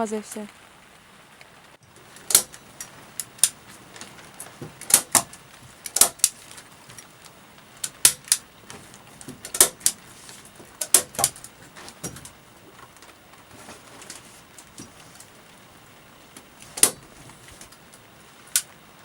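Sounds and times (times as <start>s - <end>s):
sharp clicks and knocks: 2.2s - 7.0s, 7.8s - 10.0s, 10.7s - 13.0s, 16.3s - 17.8s.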